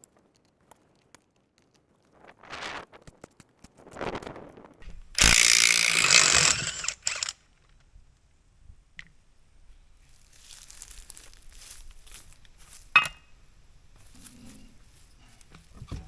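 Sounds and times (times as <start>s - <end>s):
power tool running on bolts: 5.2s - 7.4s.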